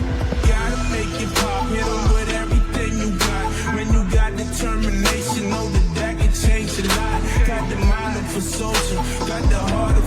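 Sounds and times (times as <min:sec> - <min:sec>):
hip-hop beat: 0:00.0 - 0:10.0
rapped vocals: 0:00.0 - 0:10.0.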